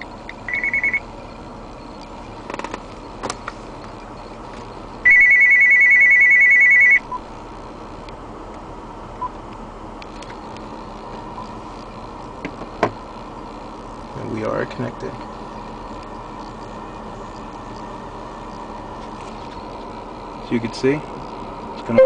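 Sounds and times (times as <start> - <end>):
electronic trilling ring tone: 0.0 - 1.1, 5.0 - 7.1.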